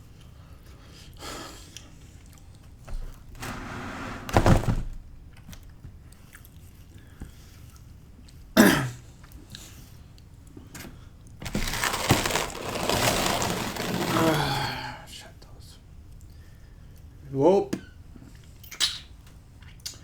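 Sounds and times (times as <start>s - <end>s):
man clearing throat and coughing: 8.6s - 9.0s.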